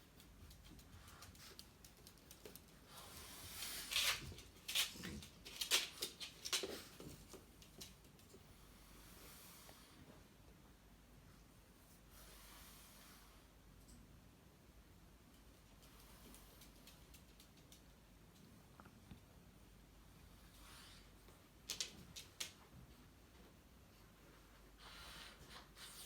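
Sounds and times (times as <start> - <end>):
dogs scuffling: 0.0 - 8.4.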